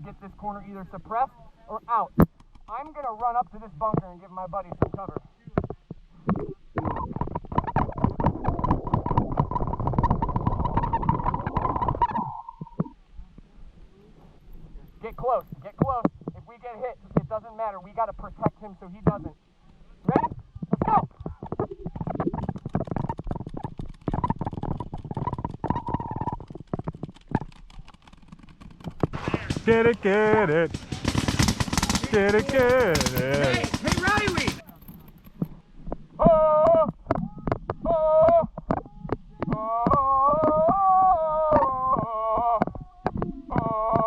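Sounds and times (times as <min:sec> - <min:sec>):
running footsteps knocks and rustles: 0:19.2 - 0:36.1
paintball marker rapid firing: 0:27.0 - 0:34.6.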